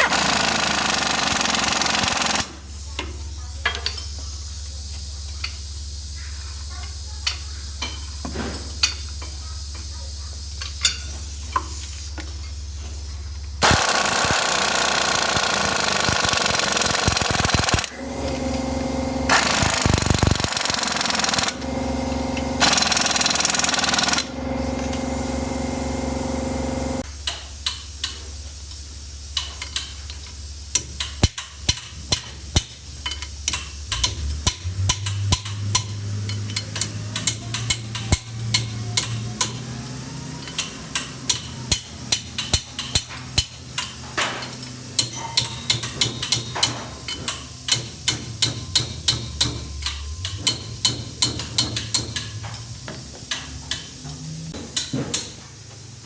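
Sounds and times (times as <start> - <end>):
power tool running: 0.0 - 2.5, 13.6 - 27.0
tools and metal parts clicking: 0.0 - 4.3, 13.6 - 18.7, 19.3 - 25.1, 27.2 - 55.4.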